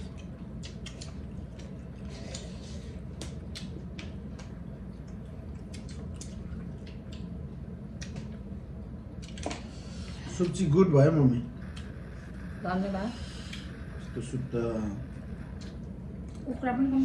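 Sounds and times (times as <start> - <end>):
food being chewed: 0.0 - 8.6, 15.3 - 16.4
small eating clicks: 0.0 - 9.7, 11.6 - 12.4.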